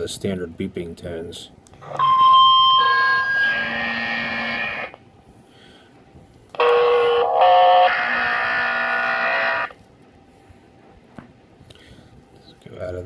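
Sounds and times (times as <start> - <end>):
pager alert tones: 1.8 - 5.0.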